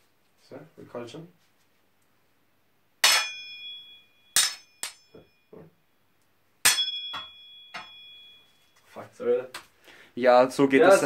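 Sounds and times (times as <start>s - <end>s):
swords clashing: 3.0s - 5.2s, 6.6s - 8.3s.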